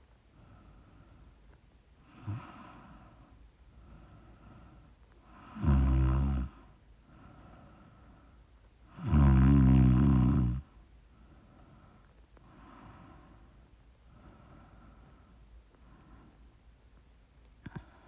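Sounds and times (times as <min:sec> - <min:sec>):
faint breathing: 0:00.3 - 0:01.4, 0:02.0 - 0:05.4, 0:06.6 - 0:08.5, 0:11.1 - 0:16.6, 0:17.6 - 0:18.0
person snoring: 0:05.4 - 0:06.6, 0:09.0 - 0:10.6.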